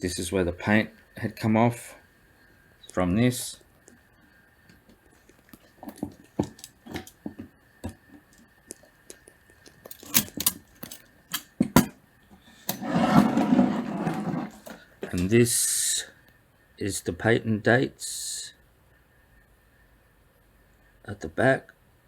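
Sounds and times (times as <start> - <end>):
typewriter clicks and knocks: 9.9 - 11.9
rustling scrape: 12.5 - 14.8.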